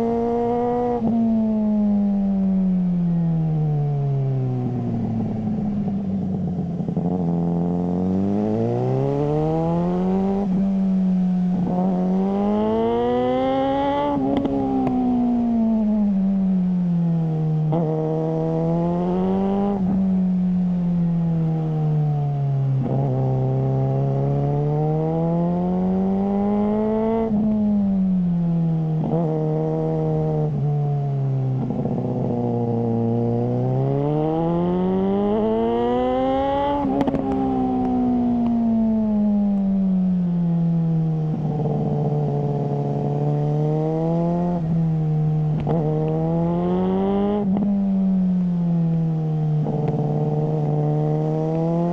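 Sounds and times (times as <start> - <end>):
motorcycle engine revving: 0.0 - 2.8, 3.8 - 51.9.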